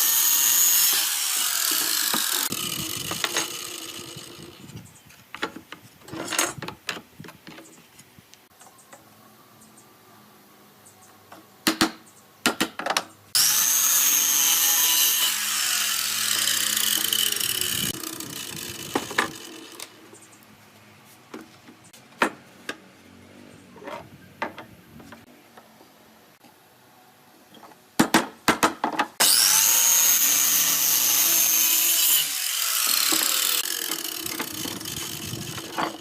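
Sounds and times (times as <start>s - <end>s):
power tool whining: 0.0s - 4.8s, 13.4s - 20.0s, 29.2s - 36.0s.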